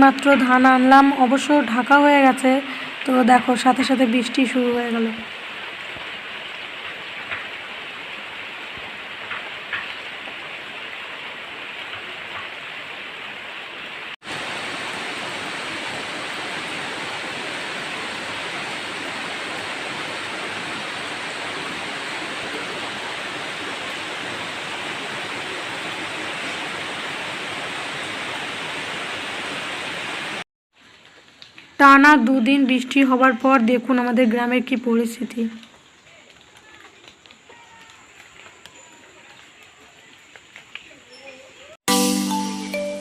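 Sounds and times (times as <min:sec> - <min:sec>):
heavy rain falling: 0:00.0 - 0:33.2, 0:35.4 - 0:42.9.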